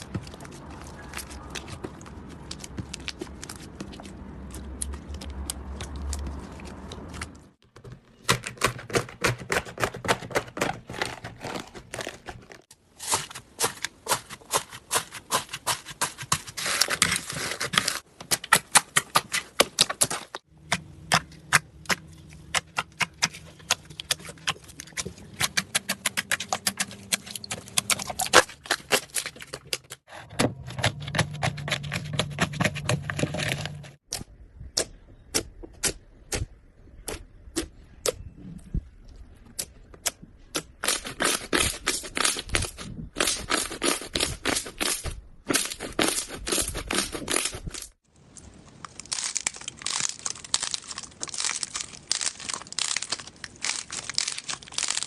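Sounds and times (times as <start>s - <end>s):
slime crackling and popping: 48.3s - 55.0s.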